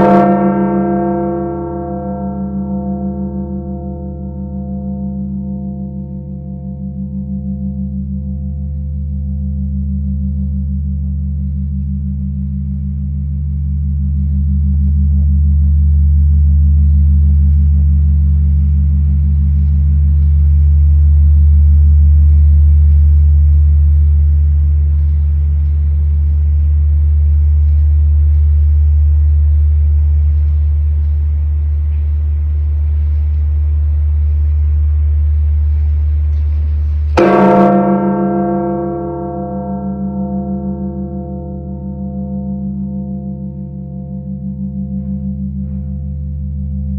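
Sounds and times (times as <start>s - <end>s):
large bell tolling: 0.0s - 12.5s, 37.2s - 46.9s.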